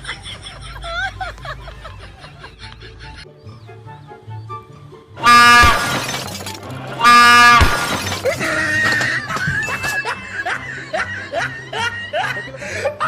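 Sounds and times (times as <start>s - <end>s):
background music: 0.0s - 13.0s
train horn blasts: 5.2s - 6.0s, 7.0s - 7.8s.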